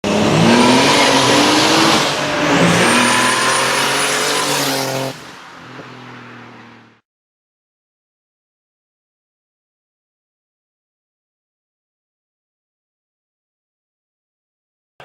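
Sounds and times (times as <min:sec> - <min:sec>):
car engine revving hard: 0:00.0 - 0:05.9.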